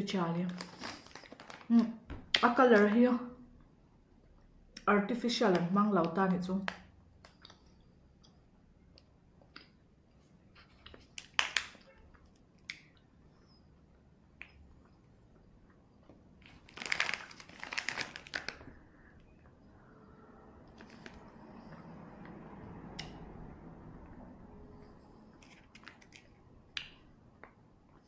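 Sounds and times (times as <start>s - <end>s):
plastic wrapper crinkling: 0.4s - 2.0s, 11.0s - 11.9s, 16.4s - 18.8s, 20.8s - 21.2s, 25.4s - 26.4s.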